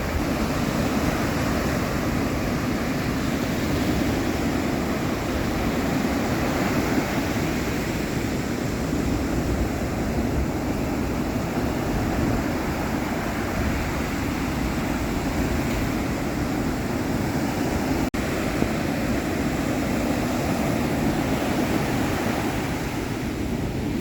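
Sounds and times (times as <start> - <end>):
ocean surf washing on shore: 0.0 - 24.0.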